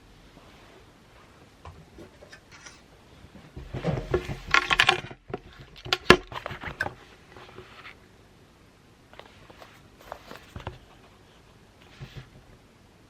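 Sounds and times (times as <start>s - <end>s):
utensil scraping and clicking dishes: 2.0s - 2.8s.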